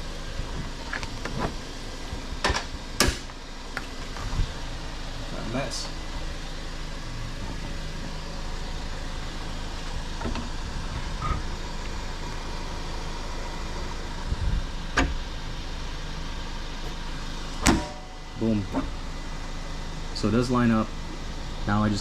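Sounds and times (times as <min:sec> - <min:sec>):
car hood slamming down: 0:17.6 - 0:18.1.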